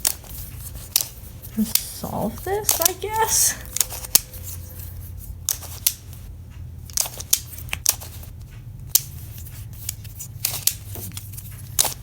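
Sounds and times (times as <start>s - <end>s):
plastic puzzle pieces clicking: 2.6s - 3.0s, 5.5s - 6.1s, 8.9s - 12.0s.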